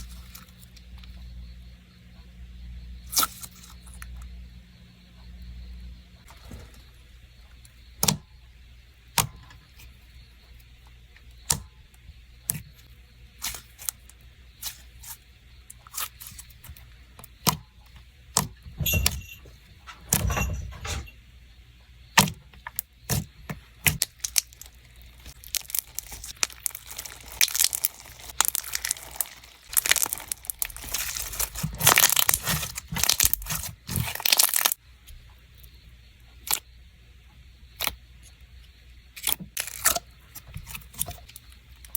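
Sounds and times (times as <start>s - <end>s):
slime squishing with pops and clicks: 8.0s - 8.4s, 9.1s - 9.8s, 11.3s - 12.8s, 13.4s - 19.2s, 22.2s - 34.8s, 36.3s - 36.7s, 37.7s - 38.0s, 39.2s - 41.9s.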